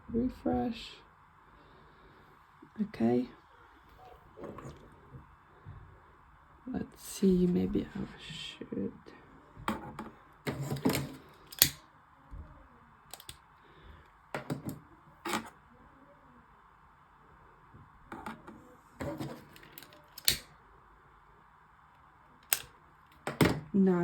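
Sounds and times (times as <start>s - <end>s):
faint steady hum: 0.0s - 24.0s
clicks and knocks of objects handled: 13.1s - 13.4s, 18.1s - 20.5s, 22.4s - 23.7s.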